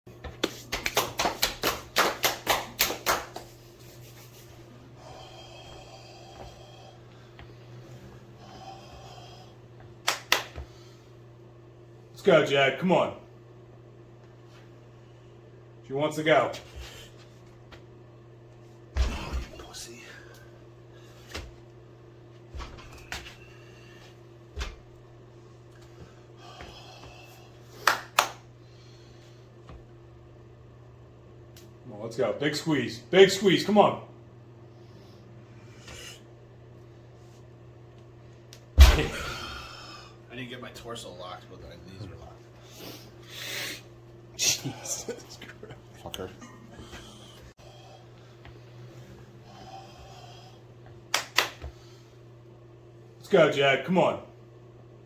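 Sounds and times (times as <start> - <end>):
low electrical hum: 0.1 - 55.0
hand claps: 0.2 - 4.3, 10.0 - 10.7, 27.8 - 28.4, 51.1 - 51.8.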